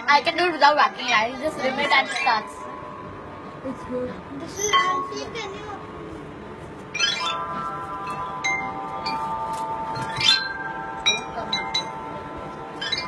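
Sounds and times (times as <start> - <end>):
singing bowls ringing: 6.9 - 13.0.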